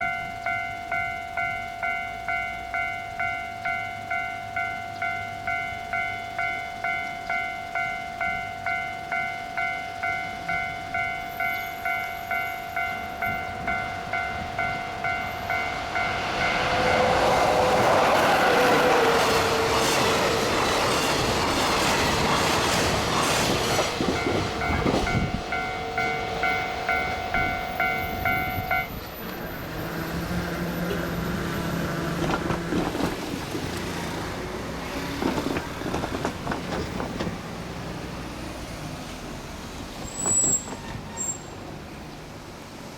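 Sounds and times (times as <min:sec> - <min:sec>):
level crossing warning bell: 0:00.0 - 0:32.4
train wheels clattering on rail joints: 0:01.3 - 0:38.3, 0:39.7 - 0:41.7.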